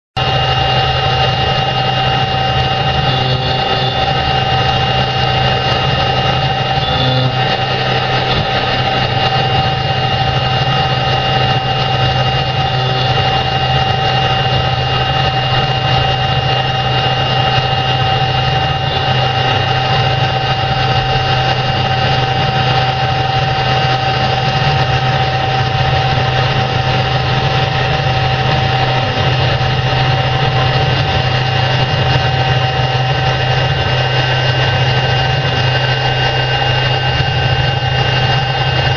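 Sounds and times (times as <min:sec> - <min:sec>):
high spindle whine: 0:00.2 - 0:38.9
engraving machine motor hum: 0:00.8 - 0:22.2.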